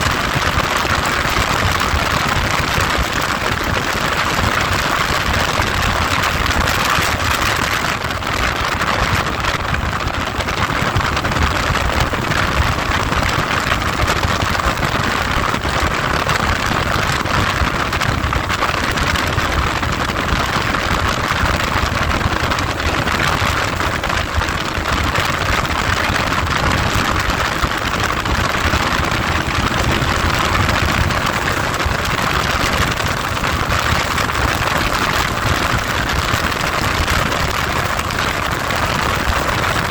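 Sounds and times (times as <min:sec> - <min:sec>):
wind over microphone: 0:00.0 - 0:39.9
vehicle engine running: 0:25.3 - 0:38.6.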